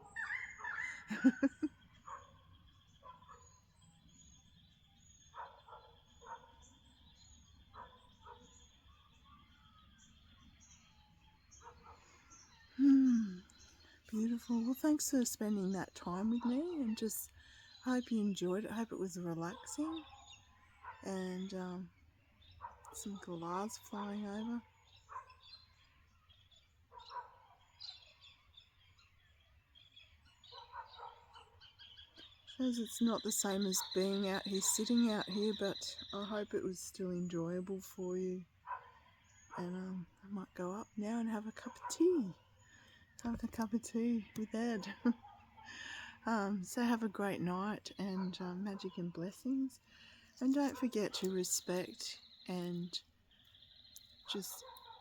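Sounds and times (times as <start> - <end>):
harsh screeching bird calls: 0.0 - 1.1
distant animal calls: 0.0 - 4.0
small birds chirping: 0.0 - 55.0.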